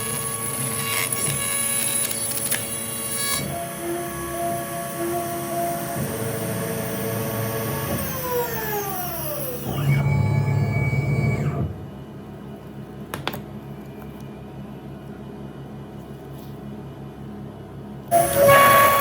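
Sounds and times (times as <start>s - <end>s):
power tool motor whining: 18.1s - 19.0s.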